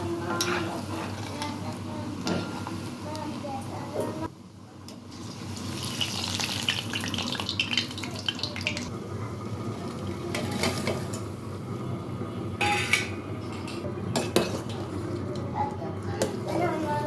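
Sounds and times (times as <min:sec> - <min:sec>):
fritters sizzling in hot oil: 0:04.9 - 0:08.9.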